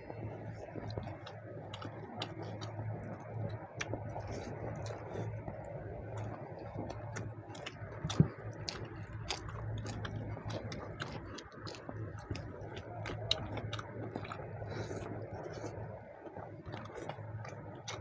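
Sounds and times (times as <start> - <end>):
mouth clicks and chewing: 0.0 - 18.0
steady low hum: 0.0 - 18.0.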